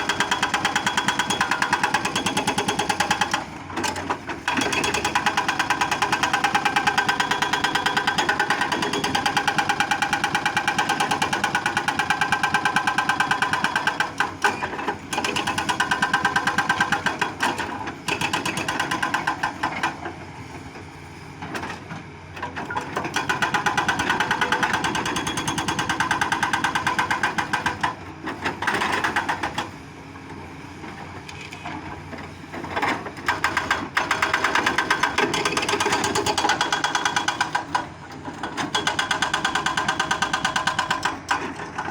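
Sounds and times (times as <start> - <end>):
excavator diesel engine under load: 25.8 - 41.9.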